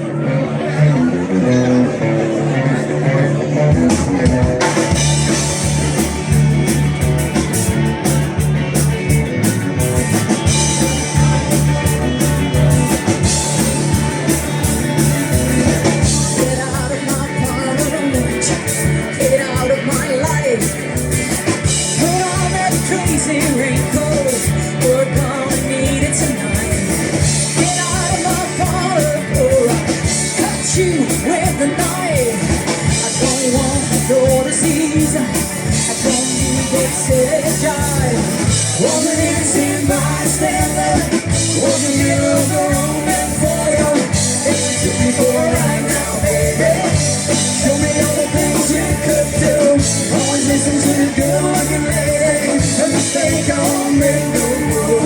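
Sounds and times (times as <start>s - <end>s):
lead guitar with bending notes: 0.0s - 55.0s
live rock band playing: 0.0s - 55.0s.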